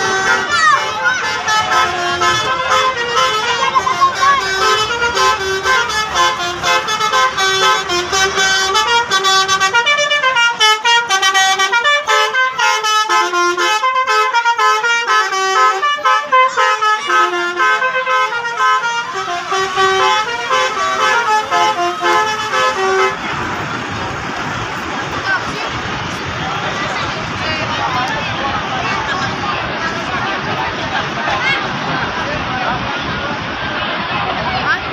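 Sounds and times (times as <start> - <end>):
multi-tone musical air horn: 0.0 - 23.4.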